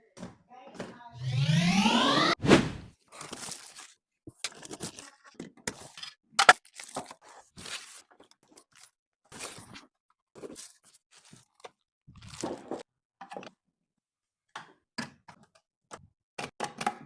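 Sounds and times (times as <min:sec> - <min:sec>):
rustles scrapes and crinkles: 0:03.1 - 0:06.1, 0:06.7 - 0:12.8.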